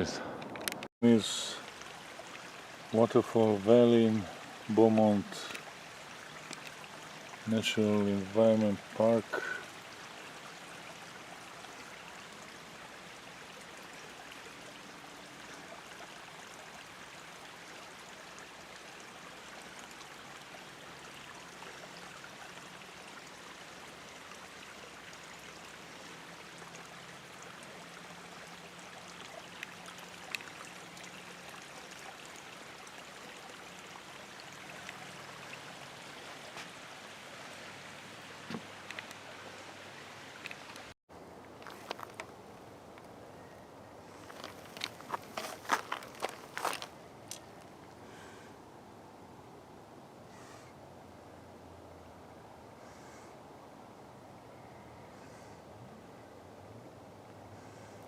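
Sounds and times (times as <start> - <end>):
water running down waterfall: 1.0 - 41.0.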